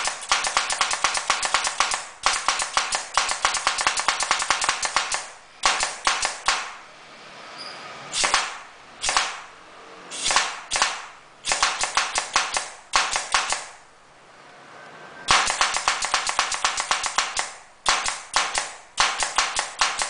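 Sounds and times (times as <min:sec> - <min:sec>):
pneumatic tool rattling: 0:00.0 - 0:06.7, 0:08.1 - 0:09.4, 0:10.1 - 0:13.8, 0:15.3 - 0:20.0
air hiss: 0:10.1 - 0:11.7.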